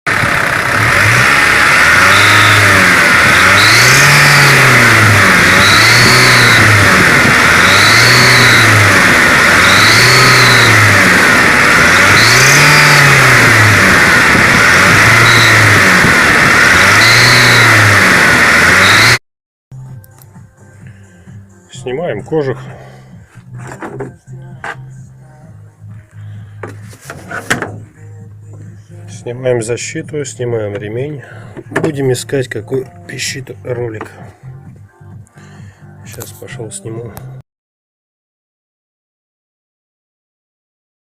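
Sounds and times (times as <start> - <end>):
diesel engine revving: 0.1 - 19.2
high pulley whistle: 2.0 - 4.8, 5.5 - 6.9, 7.5 - 8.9, 9.5 - 11.0, 11.9 - 13.3, 14.7 - 19.2.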